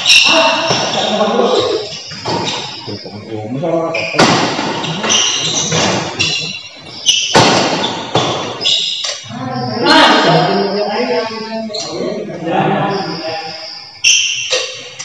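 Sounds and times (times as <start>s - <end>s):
people's voices: 0.0s - 7.5s, 9.3s - 14.0s
rackets striking shuttlecock: 4.1s - 9.2s, 14.2s - 15.0s.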